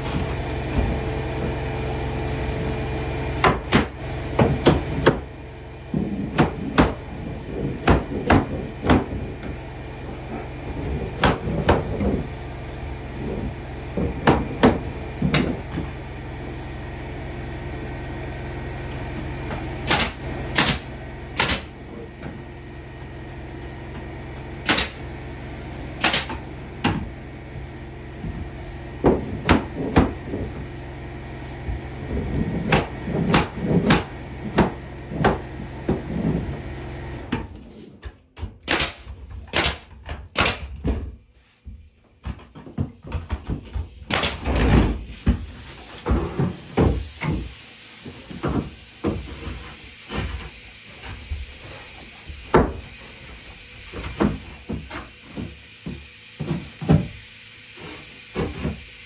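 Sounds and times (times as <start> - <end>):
wood knocking and clunking: 3.4 - 12.4, 13.1 - 16.0, 28.2 - 30.8, 31.7 - 36.7.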